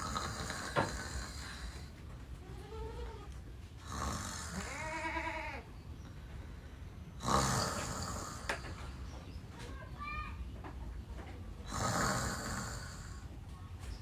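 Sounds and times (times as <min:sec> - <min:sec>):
person snoring: 0:00.0 - 0:01.9, 0:03.8 - 0:04.7, 0:07.2 - 0:08.7, 0:11.7 - 0:13.2.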